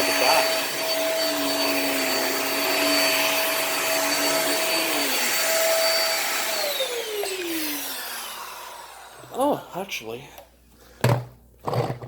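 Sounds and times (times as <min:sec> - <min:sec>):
vacuum motor spinning down: 0:00.0 - 0:09.3
vacuum cleaner motor whine: 0:00.0 - 0:09.4.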